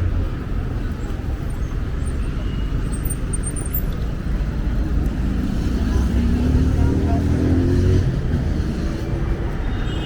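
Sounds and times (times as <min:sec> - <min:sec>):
passing cars rumbling: 0:02.8 - 0:10.0.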